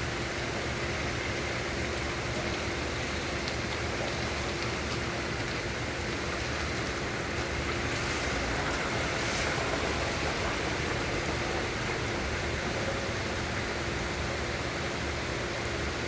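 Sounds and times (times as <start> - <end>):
faint steady hum: 0.0 - 16.0
heavy rain pouring: 1.2 - 14.5.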